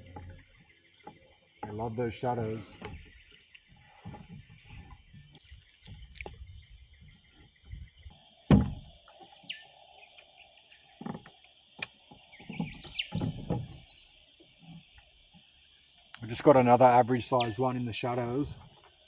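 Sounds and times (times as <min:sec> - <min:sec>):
high insect drone: 0:00.0 - 0:19.0
knocks and clicks on plastic kayak: 0:08.5 - 0:09.0.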